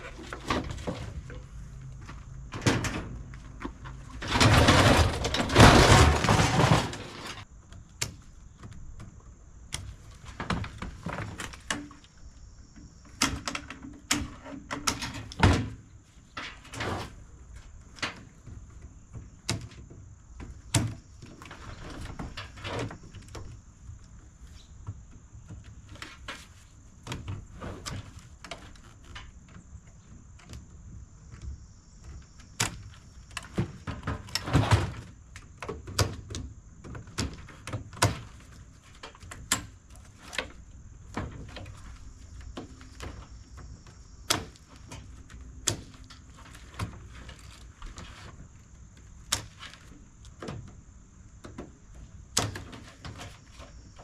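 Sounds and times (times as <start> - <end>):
metal parts and tools clanking: 2.5 - 7.4.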